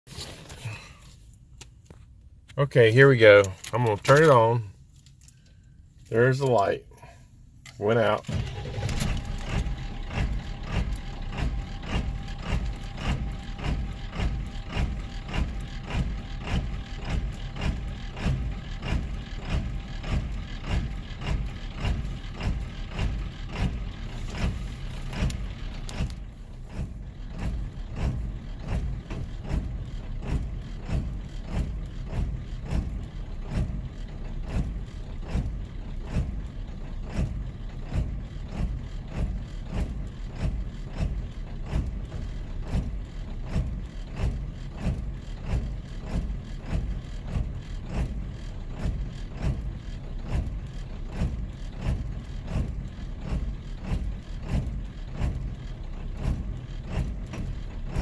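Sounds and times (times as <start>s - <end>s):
diesel engine idling roughly: 6.6s - 58.0s.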